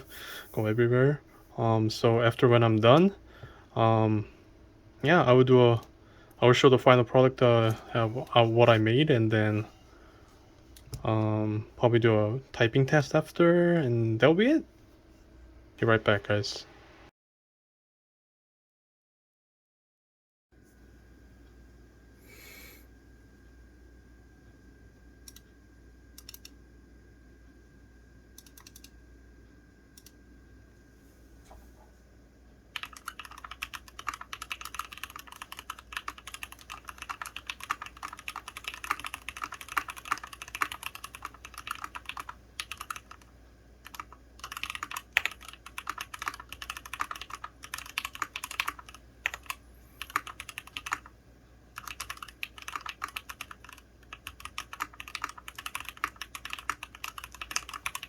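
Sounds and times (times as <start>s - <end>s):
fast typing on mechanical keyboard: 32.8s - 51.1s, 51.8s - 58.0s.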